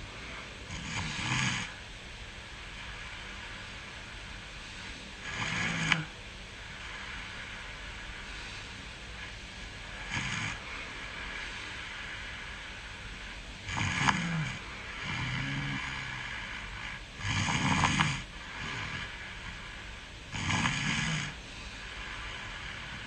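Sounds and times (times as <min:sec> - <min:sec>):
background hiss: 0:00.0 - 0:23.0
person snoring: 0:00.2 - 0:01.8, 0:05.2 - 0:07.6, 0:09.9 - 0:12.6, 0:13.6 - 0:23.0.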